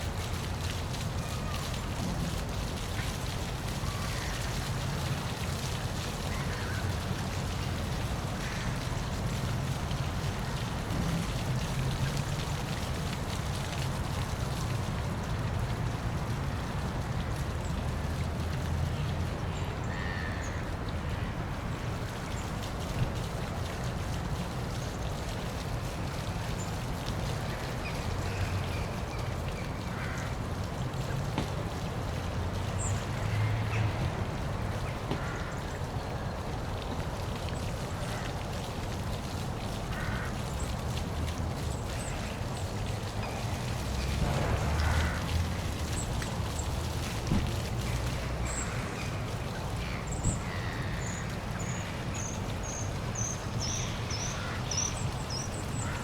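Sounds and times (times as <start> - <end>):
waterfall rushing: 42.0 - 52.2.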